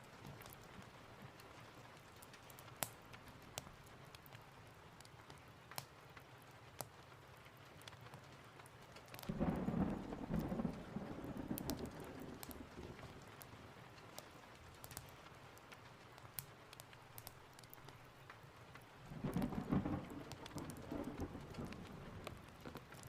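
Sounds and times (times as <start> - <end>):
steady rain: 0.0 - 23.0
thunder rumbling: 9.3 - 13.5, 19.1 - 22.8.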